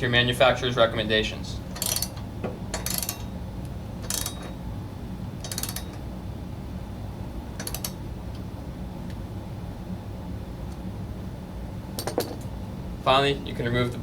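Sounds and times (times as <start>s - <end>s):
ratchet wrench clicking: 1.7s - 3.4s, 4.0s - 4.5s, 5.4s - 6.0s, 7.6s - 8.0s.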